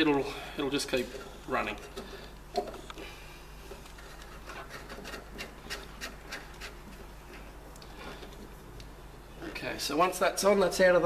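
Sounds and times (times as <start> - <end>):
steady low hum: 0.0 - 11.0
rubbing: 3.9 - 7.6.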